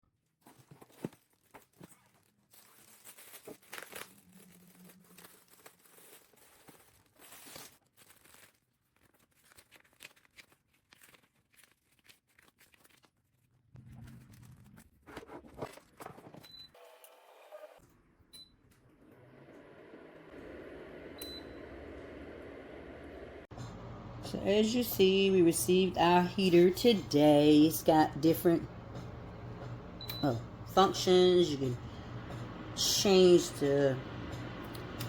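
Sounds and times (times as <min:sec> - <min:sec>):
packaging tearing and crinkling: 0:00.4 - 0:16.2.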